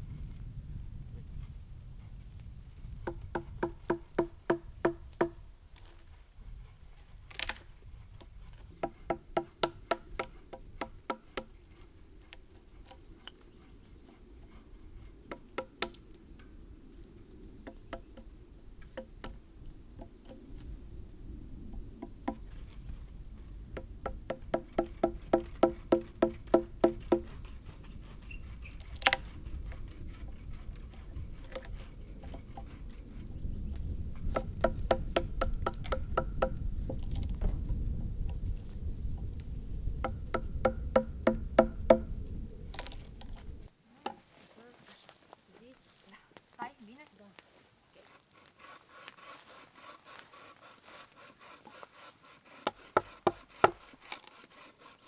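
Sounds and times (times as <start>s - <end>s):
hammering on wood: 3.0s - 5.4s, 8.8s - 11.5s, 23.8s - 27.4s, 34.3s - 36.6s, 40.0s - 42.1s, 52.6s - 53.9s.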